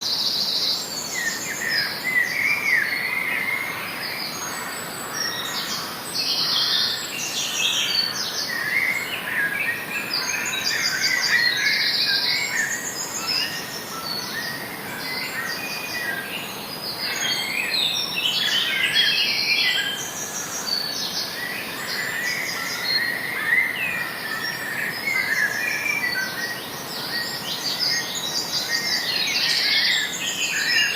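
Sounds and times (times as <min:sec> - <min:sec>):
wild birds chirping: 0:00.0 - 0:30.9.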